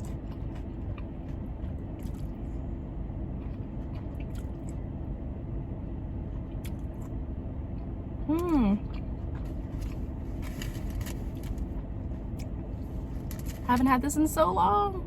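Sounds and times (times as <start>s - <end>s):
soft chewing: 0.0s - 2.7s, 3.4s - 4.9s, 8.4s - 13.8s
car air conditioning hum: 0.0s - 15.0s.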